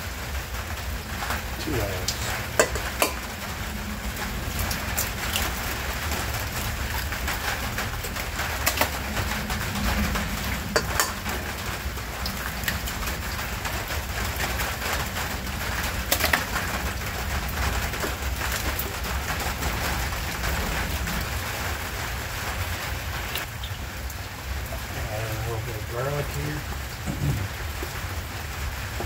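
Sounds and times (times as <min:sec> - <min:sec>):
heavy rain falling: 0:00.0 - 0:29.0
deep fluctuating rumble: 0:03.2 - 0:23.2.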